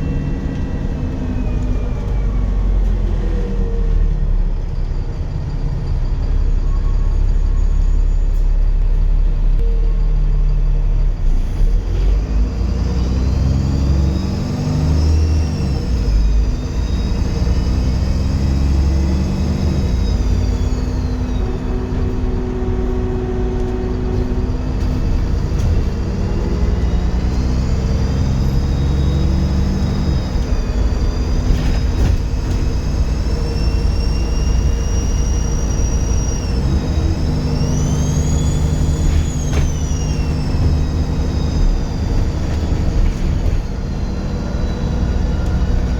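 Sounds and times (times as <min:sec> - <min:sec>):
bus engine pulling under load: 0:00.0 - 0:45.9
high turbo whistle: 0:13.7 - 0:45.9.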